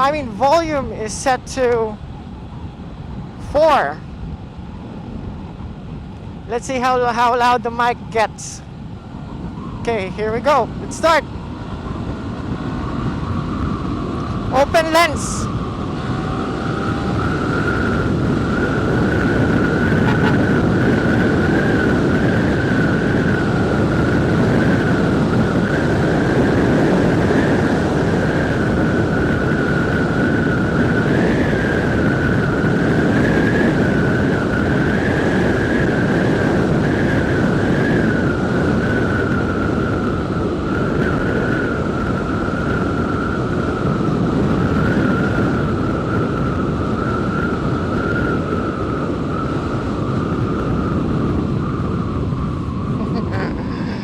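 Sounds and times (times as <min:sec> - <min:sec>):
high whine: 0:00.0 - 0:26.0, 0:50.3 - 0:54.0
wind rush while motorcycle riding: 0:00.0 - 0:54.0.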